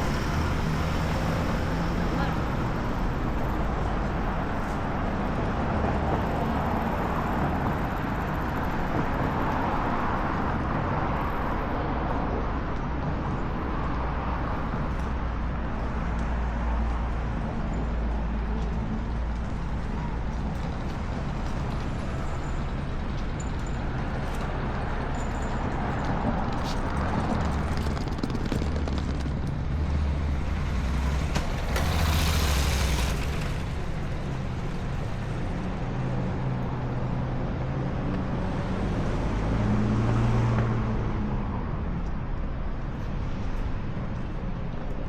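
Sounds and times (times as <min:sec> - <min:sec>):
road vehicles passing: 0:00.0 - 0:45.0.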